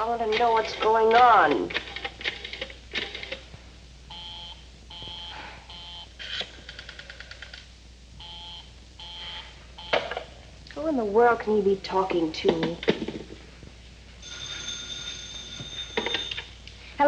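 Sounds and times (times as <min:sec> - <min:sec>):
telephone busy signal beeps: 0:04.1 - 0:06.1, 0:08.2 - 0:10.1.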